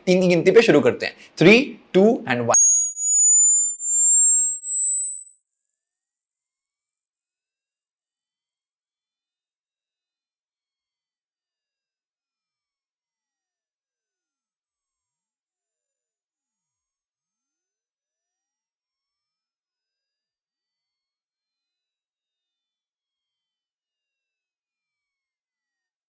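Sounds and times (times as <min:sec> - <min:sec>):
high pitched beep rising: 0:02.5 - 0:26.0.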